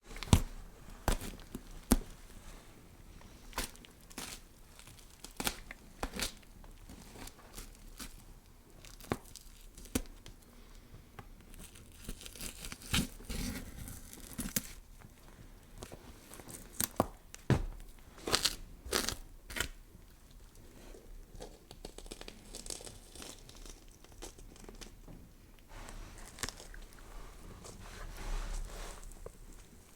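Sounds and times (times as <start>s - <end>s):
wet tearing and scraping: 18.2s - 19.8s, 26.1s - 27.0s.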